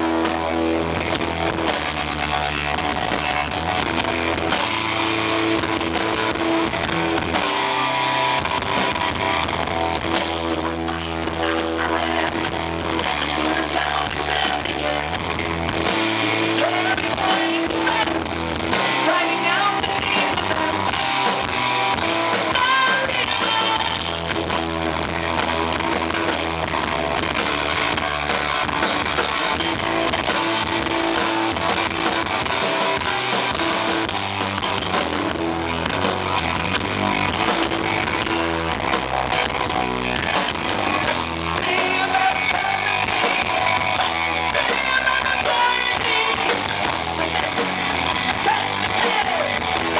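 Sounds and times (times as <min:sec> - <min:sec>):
drums: 0:00.0 - 0:49.9
guitar: 0:00.0 - 0:49.9
person singing: 0:10.6 - 0:15.2, 0:16.2 - 0:21.2, 0:22.3 - 0:24.3, 0:41.0 - 0:49.9.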